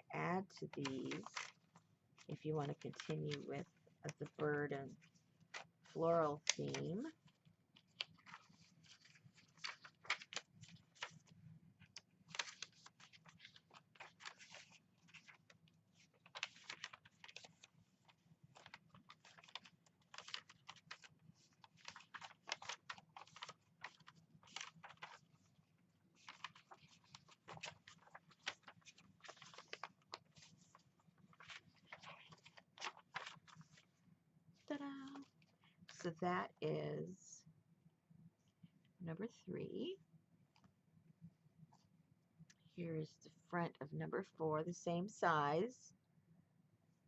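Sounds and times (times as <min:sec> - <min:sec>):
paper pages rustling: 0:00.7 - 0:34.0, 0:34.6 - 0:35.9.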